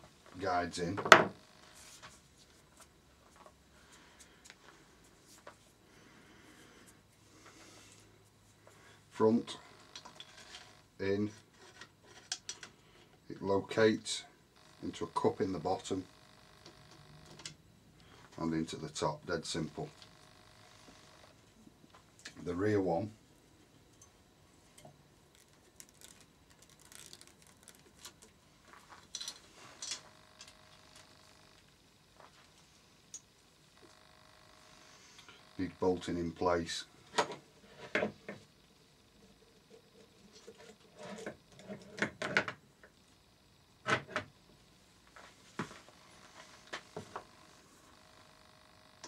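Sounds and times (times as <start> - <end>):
parts and tools clicking and knocking: 9.9 - 10.7, 11.7 - 12.8, 28.0 - 30.6, 40.3 - 43.0.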